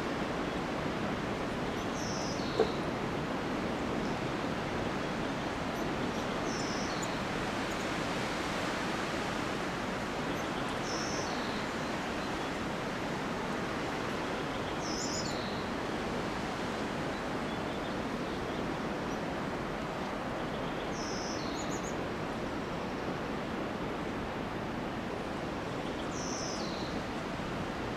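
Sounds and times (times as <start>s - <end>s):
wind through pine trees: 0.0s - 27.9s.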